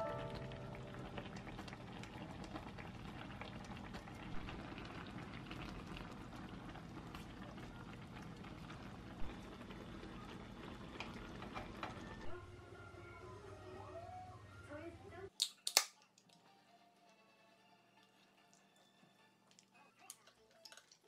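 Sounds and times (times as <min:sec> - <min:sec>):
liquid bubbling in a pot: 0:00.5 - 0:12.4, 0:19.4 - 0:21.0.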